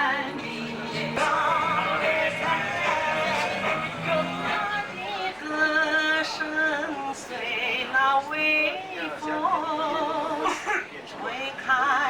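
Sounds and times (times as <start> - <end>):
slow song: 0.0 - 6.2.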